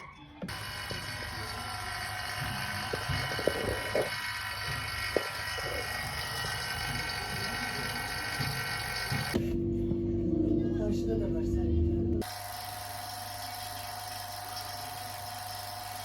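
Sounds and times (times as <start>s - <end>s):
small electric motor whining: 0.5s - 9.4s.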